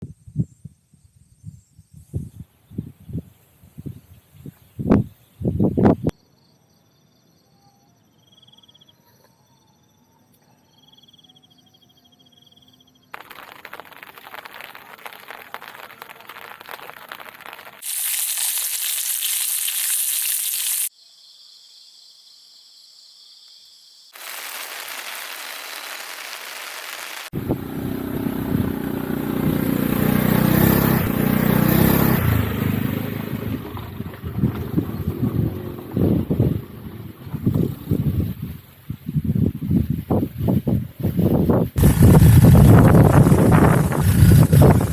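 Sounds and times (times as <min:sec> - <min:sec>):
wind on microphone: 0:00.0 - 0:06.1, 0:33.5 - 0:44.9
even hiss: 0:13.2 - 0:21.0, 0:24.0 - 0:27.3
insect calls: 0:17.8 - 0:27.1
motorcycle rumble: 0:27.3 - 0:38.6, 0:41.8 - 0:44.9.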